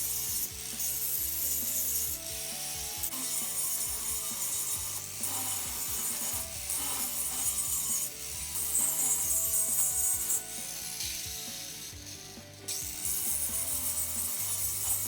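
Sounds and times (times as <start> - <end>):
angle grinder grinding metal: 0.0 - 15.0.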